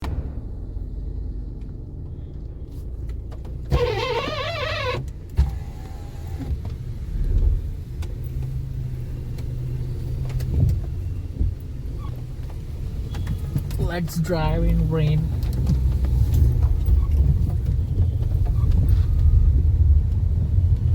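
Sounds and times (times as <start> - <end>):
car engine rumble from cabin: 0.0 - 20.9.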